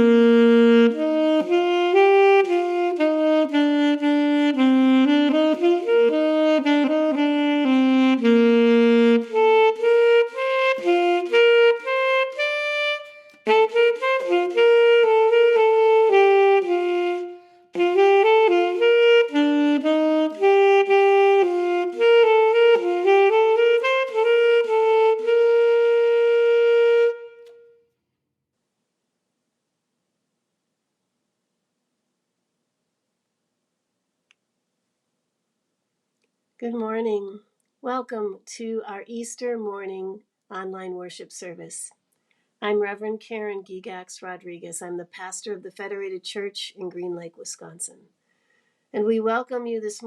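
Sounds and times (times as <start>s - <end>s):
wind instrument melody: 0.0s - 27.8s.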